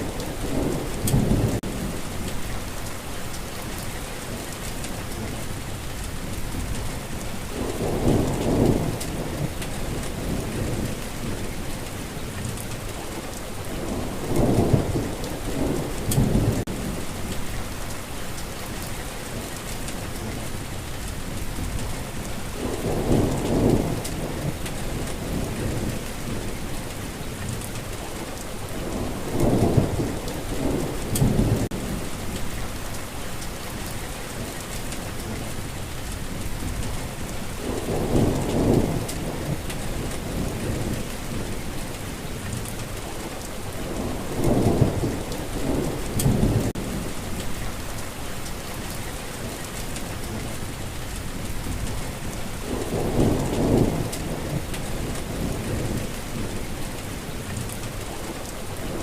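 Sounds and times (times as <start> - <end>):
rumbling thunder: 0.0 - 2.8, 6.3 - 12.8, 13.6 - 17.7, 21.2 - 28.0, 28.6 - 32.9, 34.7 - 48.0, 49.7 - 59.0
steady rain: 0.0 - 59.0.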